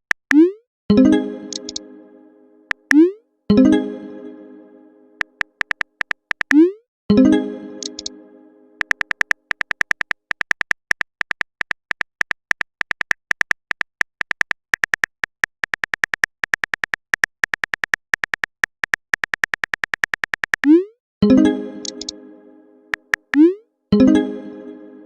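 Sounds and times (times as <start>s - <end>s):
high electronic text blips: 0.1s - 1.8s, 2.7s - 3.8s, 5.2s - 8.2s, 8.8s - 20.9s, 21.8s - 22.2s.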